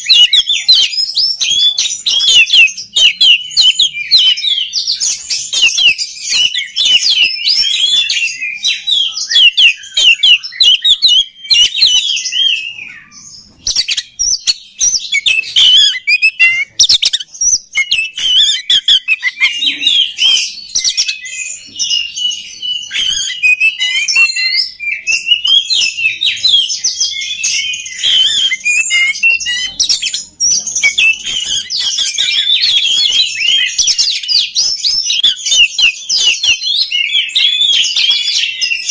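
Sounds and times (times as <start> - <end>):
bird singing chirps and trills: 0.0 - 38.9.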